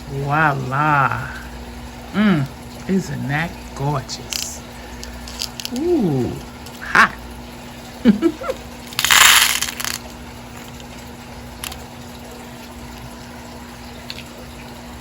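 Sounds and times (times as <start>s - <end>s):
faint steady hum: 0.0s - 15.0s
bead packet rustling: 5.1s - 5.8s, 9.0s - 10.0s.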